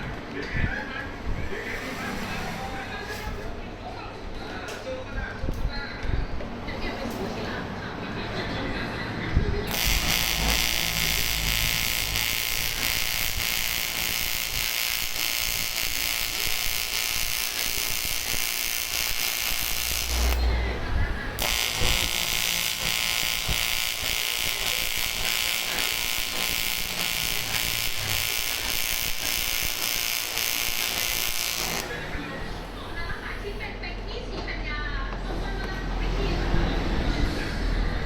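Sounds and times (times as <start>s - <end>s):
welding arc buzzing and hissing: 9.7s - 20.5s, 21.4s - 32.1s.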